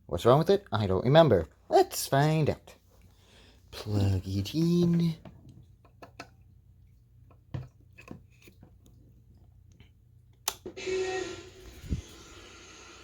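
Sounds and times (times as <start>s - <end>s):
alarm clock hissing: 10.7s - 13.0s.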